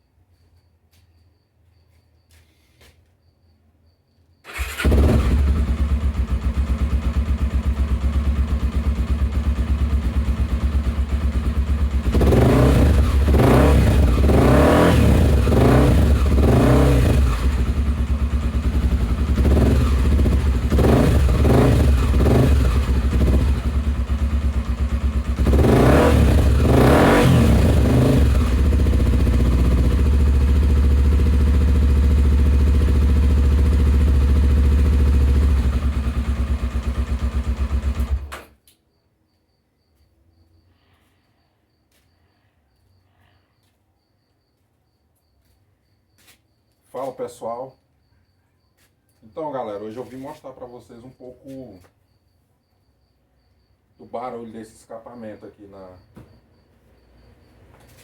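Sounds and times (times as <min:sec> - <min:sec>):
motorcycle engine idling and revving: 0:04.5 - 0:38.5, 0:56.2 - 0:58.0.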